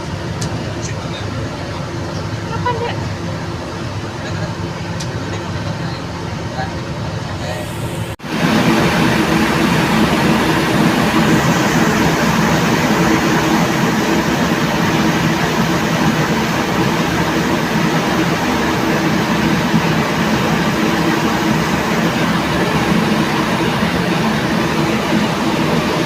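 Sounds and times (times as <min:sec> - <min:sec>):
ferry engine droning: 0:00.0 - 0:26.0
rushing noise: 0:07.3 - 0:26.0.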